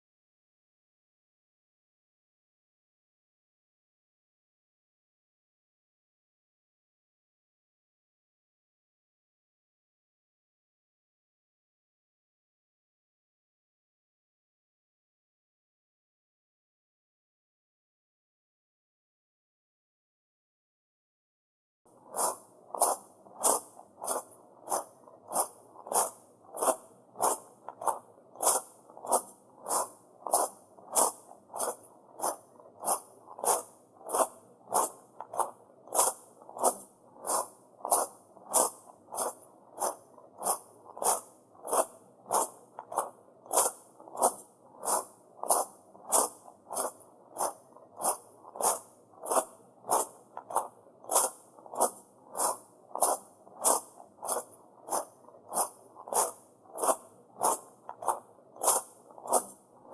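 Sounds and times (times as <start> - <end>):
footsteps crunching on gravel: 22.0 - 59.6.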